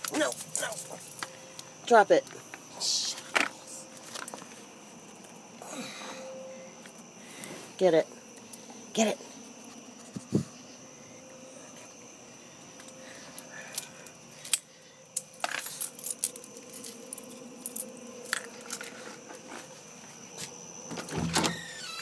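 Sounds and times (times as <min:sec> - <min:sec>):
thin high drone: 0:05.6 - 0:07.3
sharp clicks and jingles: 0:13.7 - 0:18.8.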